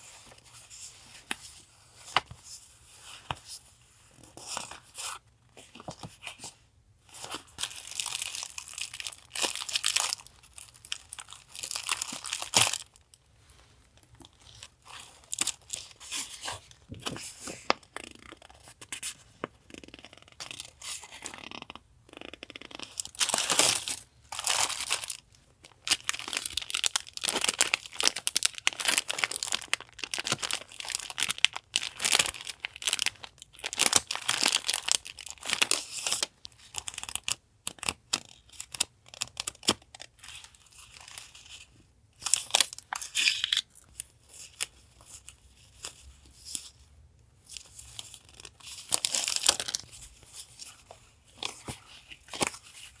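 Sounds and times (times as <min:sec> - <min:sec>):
paper crinkling and tearing: 0:22.7 - 0:36.3.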